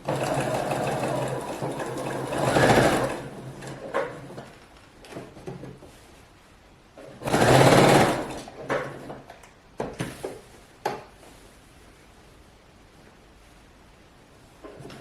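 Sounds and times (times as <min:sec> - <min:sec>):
sewing machine stitching: 0:00.0 - 0:04.4, 0:07.0 - 0:09.2.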